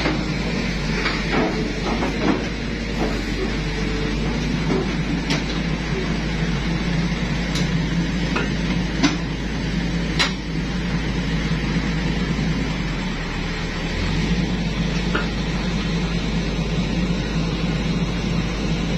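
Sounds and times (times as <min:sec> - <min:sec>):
excavator diesel engine running: 0:00.0 - 0:18.9.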